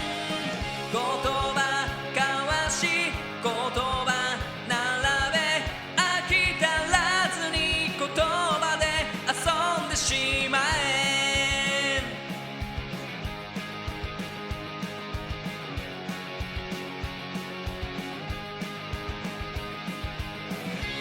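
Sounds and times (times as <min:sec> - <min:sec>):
sung vocal line: 0:00.0 - 0:12.6
pop-rock band with drum beat: 0:00.0 - 0:21.0.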